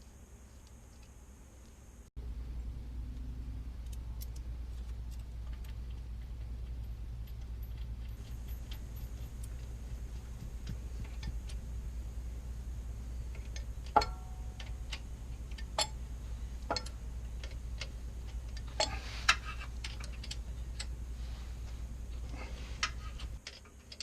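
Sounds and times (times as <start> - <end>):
steady low hum: 0.0 - 24.0
ringing metal strike: 14.0 - 14.5.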